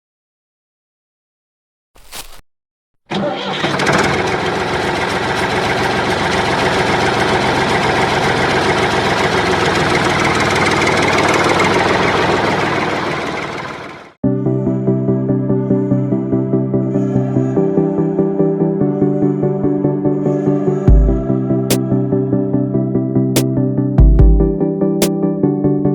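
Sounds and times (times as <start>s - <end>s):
engine running: 3.1s - 14.2s.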